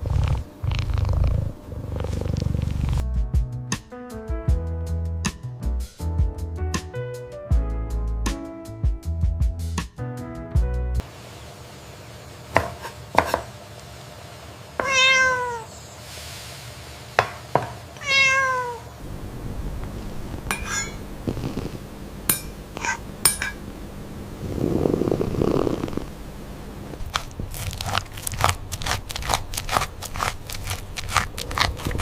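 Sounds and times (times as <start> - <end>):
cat meowing: 14.8 - 15.8, 18.0 - 18.9, 22.8 - 23.0.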